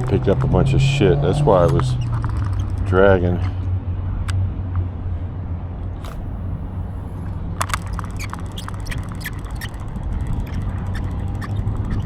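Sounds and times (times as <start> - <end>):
fishing reel ticking: 6.0 - 12.0.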